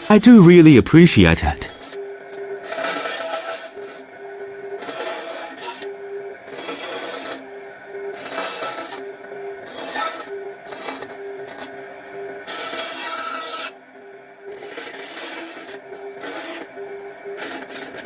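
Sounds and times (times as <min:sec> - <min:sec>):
rasping strokes on wood: 0:00.0 - 0:00.3, 0:02.6 - 0:04.0, 0:04.8 - 0:05.9, 0:06.5 - 0:07.4, 0:12.5 - 0:13.8, 0:14.6 - 0:16.7, 0:17.4 - 0:18.0.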